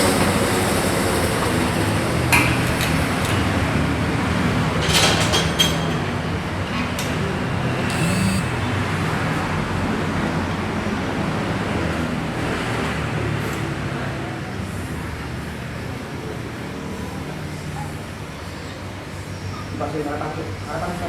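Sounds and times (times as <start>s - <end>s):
scooter engine running: 7.9s - 8.8s.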